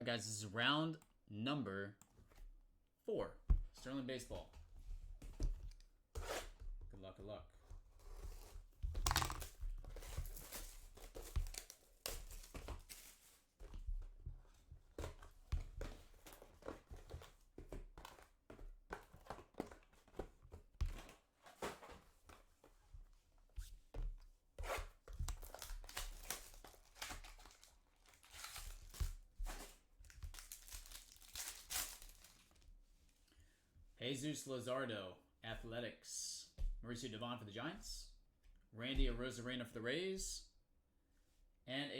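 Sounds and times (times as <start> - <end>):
card packs tearing and crinkling: 9.1 - 13.3, 25.3 - 32.6.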